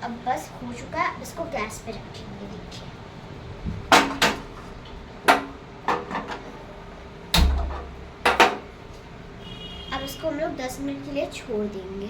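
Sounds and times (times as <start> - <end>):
gas burner clicks and knocks: 3.7 - 6.6, 7.3 - 8.7
low thump: 7.4 - 8.0.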